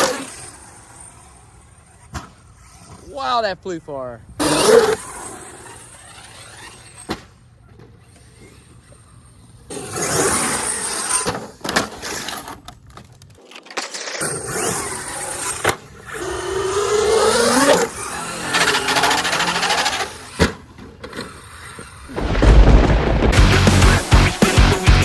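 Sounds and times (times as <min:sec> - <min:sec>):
electric motor whining: 0:14.4 - 0:22.4.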